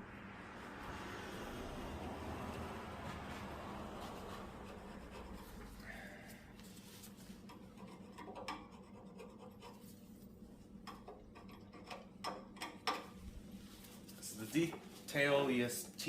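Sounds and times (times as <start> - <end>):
toothbrush scrubbing metal parts: 7.4 - 12.8.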